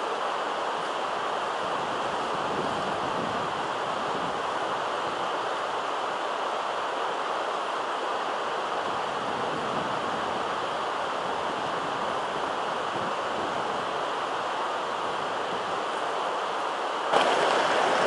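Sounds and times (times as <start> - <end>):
water rushing: 13.8 - 18.0.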